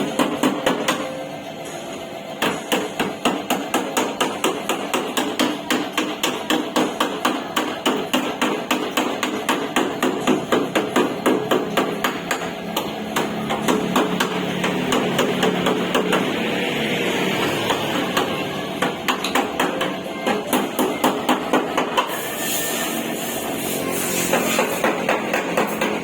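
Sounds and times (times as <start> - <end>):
hammer striking sheet metal: 17.2 - 26.0.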